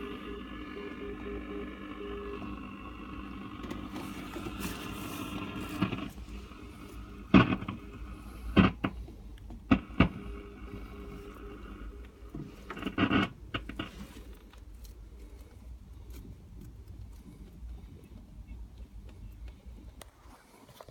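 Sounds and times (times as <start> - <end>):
radio hiss: 0.0 - 9.1, 9.7 - 14.1.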